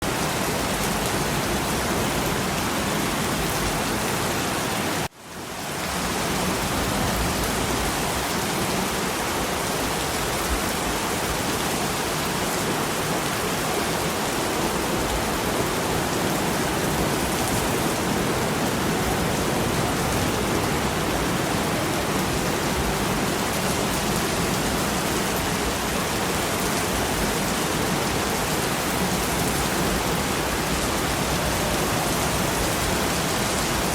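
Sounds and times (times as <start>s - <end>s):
steady rain: 0.0s - 33.9s.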